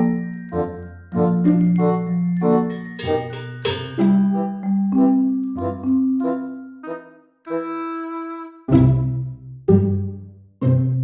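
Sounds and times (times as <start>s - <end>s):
bouncy mallet percussion tune: 0.0s - 8.1s.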